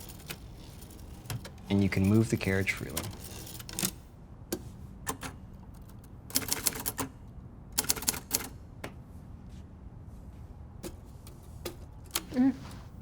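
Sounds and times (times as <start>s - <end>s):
typewriter clicking and clacking: 5.1s - 7.1s.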